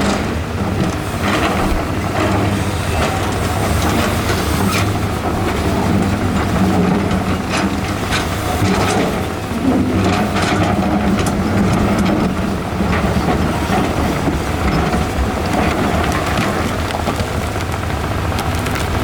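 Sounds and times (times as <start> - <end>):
excavator diesel engine running: 0.0 - 19.0
bucket and rocks clanking: 7.0 - 17.8.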